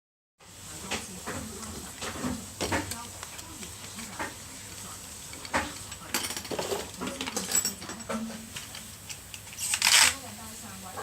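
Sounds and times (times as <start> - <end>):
plastic spinning tops clicking: 8.6 - 10.2.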